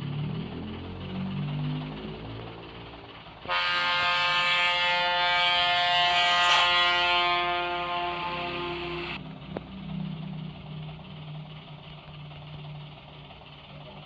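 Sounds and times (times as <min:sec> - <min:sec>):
bus engine idling: 0:00.0 - 0:14.0
bus horn blaring: 0:03.4 - 0:09.2.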